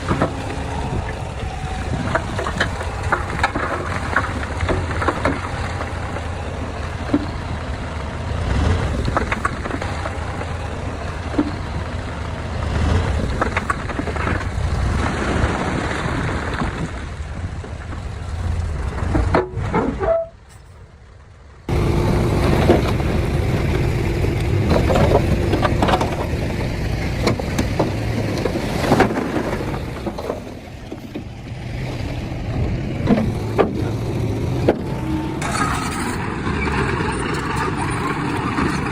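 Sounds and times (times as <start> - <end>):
diesel engine under load: 0.0 - 38.9
machinery clanks: 33.0 - 38.9.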